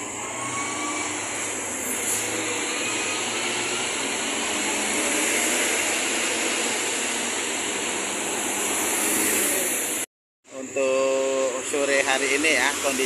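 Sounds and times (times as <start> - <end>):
roadside traffic noise: 0.0 - 13.0.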